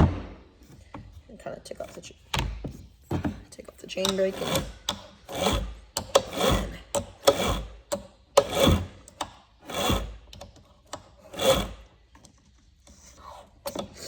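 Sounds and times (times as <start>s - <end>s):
chainsaw starter rope pulls: 4.0s - 7.8s.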